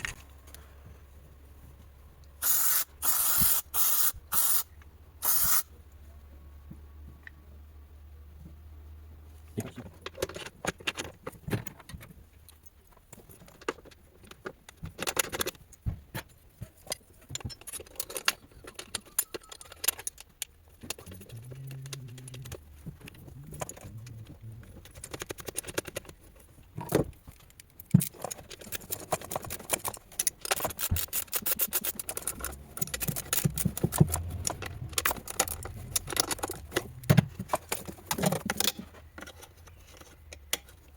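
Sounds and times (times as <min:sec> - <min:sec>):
metal tools clinking and rattling: 0:16.8 - 0:40.8.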